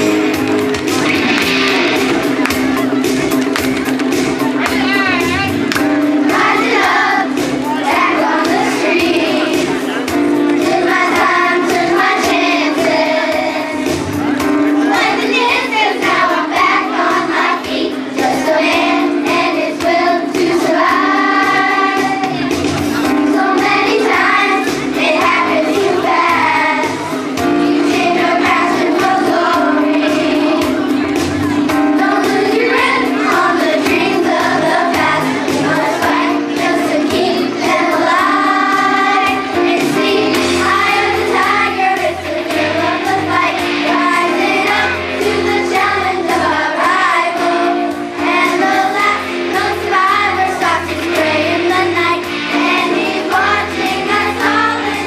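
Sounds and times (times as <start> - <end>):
children's choir singing: 0.0 - 55.0
musical accompaniment: 0.0 - 55.0.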